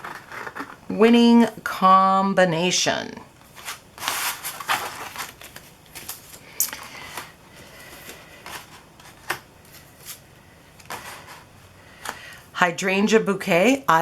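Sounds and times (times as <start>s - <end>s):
plastic sheets shuffled on a table: 3.4s - 10.2s, 10.8s - 12.3s.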